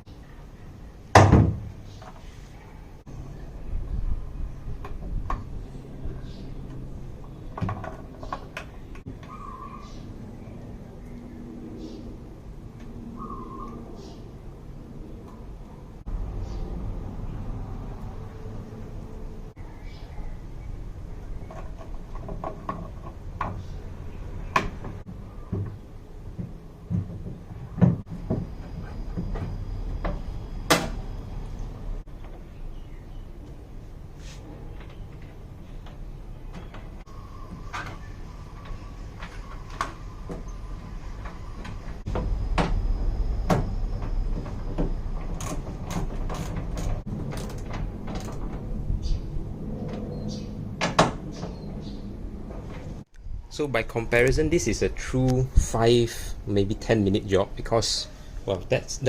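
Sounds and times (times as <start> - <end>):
low rumble: 41.9 - 46.2.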